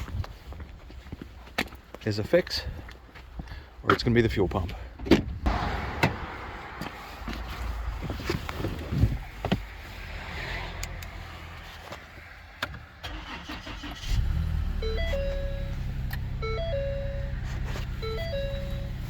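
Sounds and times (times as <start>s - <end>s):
car engine starting and running: 5.4s - 19.0s.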